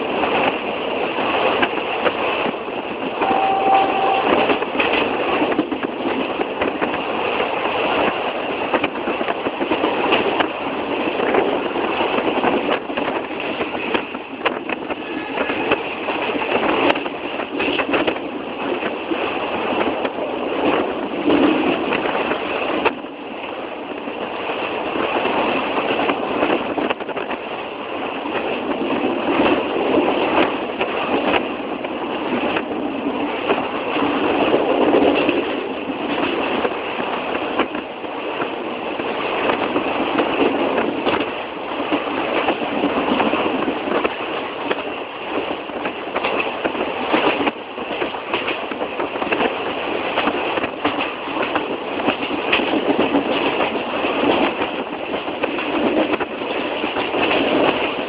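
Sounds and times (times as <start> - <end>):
train rattling on rails: 0.0 - 58.0
short steady tone: 3.2 - 4.5.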